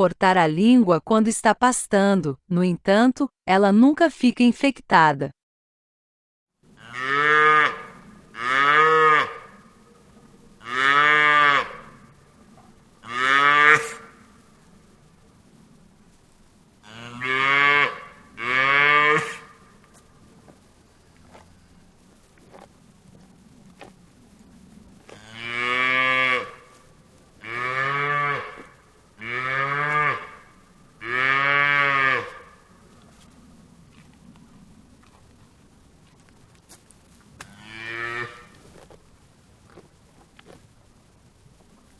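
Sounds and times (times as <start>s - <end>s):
cattle mooing: 6.8s - 9.8s, 10.6s - 12.2s, 13.0s - 14.4s, 16.8s - 19.6s, 25.1s - 26.8s, 27.4s - 32.6s, 37.4s - 38.6s.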